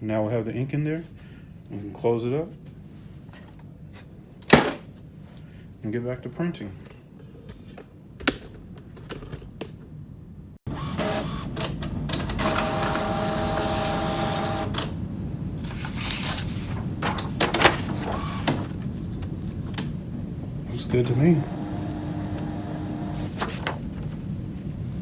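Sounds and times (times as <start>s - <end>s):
printer clicks and clunks: 4.4s - 4.9s, 10.8s - 15.0s, 15.6s - 20.0s, 20.9s - 24.2s
printer whine: 10.7s - 19.5s, 20.3s - 24.3s
printer mechanical whir: 10.7s - 24.5s.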